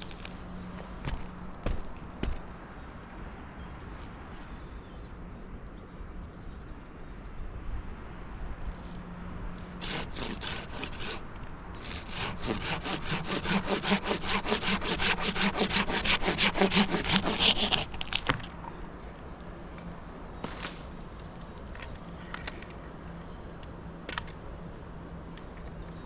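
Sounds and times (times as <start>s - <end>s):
hand saw cutting wood: 9.6s - 18.5s.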